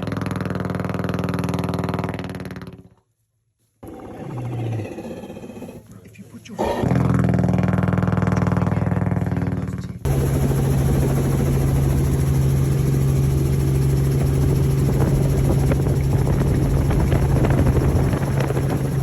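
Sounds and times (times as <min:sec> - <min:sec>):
loud engine drone: 0:06.6 - 0:19.0.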